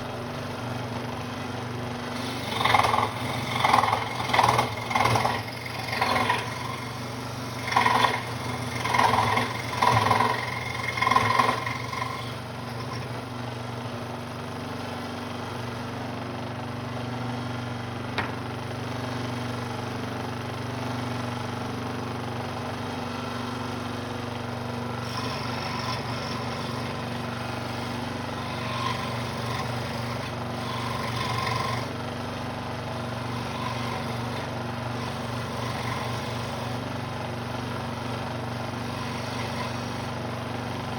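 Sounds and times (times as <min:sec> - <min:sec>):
scroll saw cutting wood: 0:02.1 - 0:13.3, 0:25.0 - 0:32.0, 0:32.8 - 0:37.0, 0:37.6 - 0:40.9.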